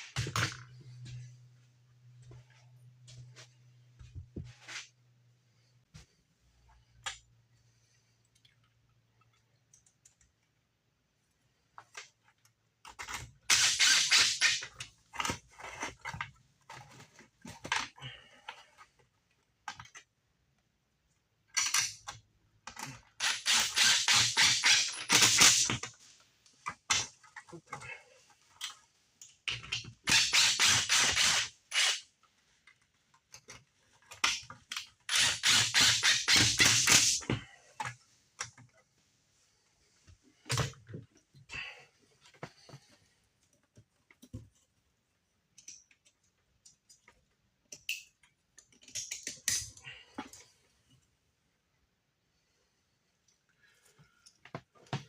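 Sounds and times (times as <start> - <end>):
impact driver driving screws: 13.5 - 14.7, 23.2 - 25.8, 30.0 - 32.1, 34.2 - 37.3.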